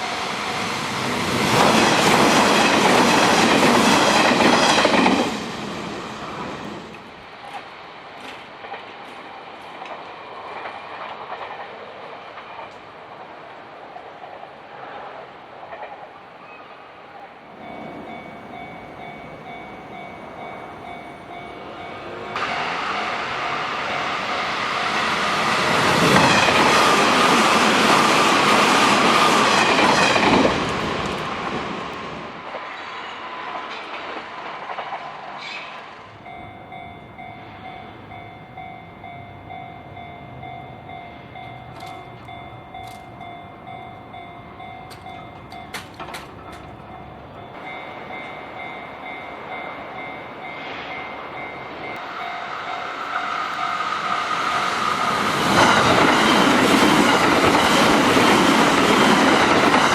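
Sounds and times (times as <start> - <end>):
level crossing warning bell: 0.0 - 0.6, 17.4 - 29.6, 36.0 - 59.9
electric train passing: 0.0 - 59.9
train approaching: 0.0 - 59.9.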